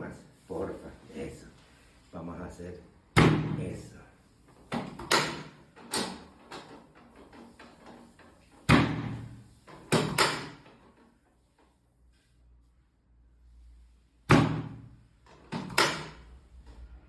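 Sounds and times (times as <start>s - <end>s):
sharp thuds of back adjustment: 3.2s - 3.7s, 14.3s - 14.9s.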